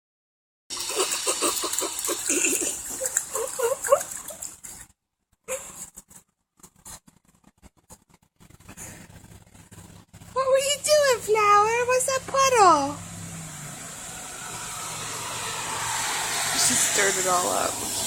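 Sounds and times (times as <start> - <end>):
rain hissing: 0.7 - 3.9, 8.8 - 18.0
light taps and splashes: 0.8 - 7.2.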